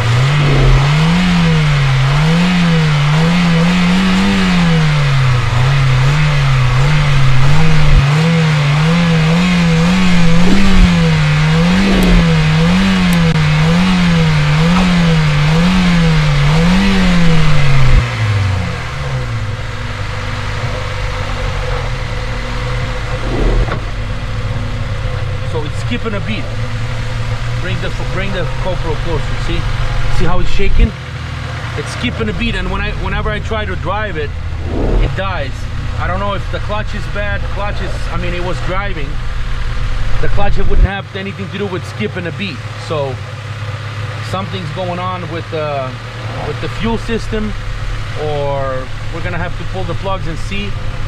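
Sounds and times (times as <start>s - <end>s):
misfiring car engine revving: 0.0s - 30.6s.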